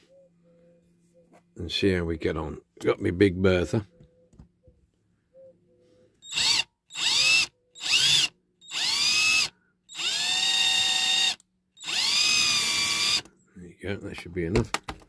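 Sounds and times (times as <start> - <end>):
electric drill whining: 6.2 - 13.3.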